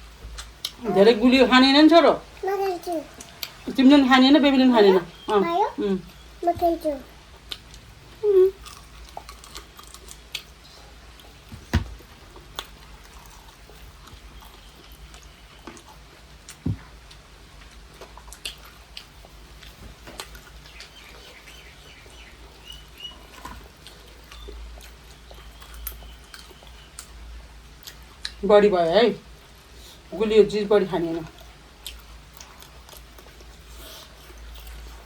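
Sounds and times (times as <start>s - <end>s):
chewing: 0.3s - 0.8s, 3.1s - 3.6s, 7.4s - 11.5s, 12.1s - 27.2s, 27.8s - 28.4s, 31.3s - 35.0s.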